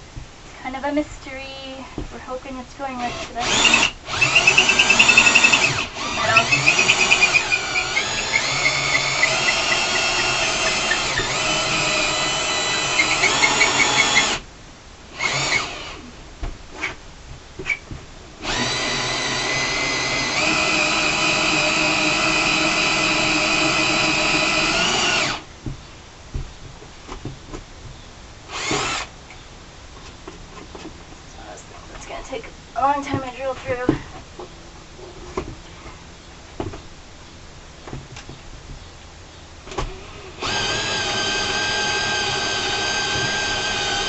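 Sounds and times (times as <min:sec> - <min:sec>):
power drill boring: 0:03.0 - 0:14.4, 0:15.2 - 0:16.0, 0:18.4 - 0:25.5, 0:28.5 - 0:29.1, 0:39.8 - 0:44.0.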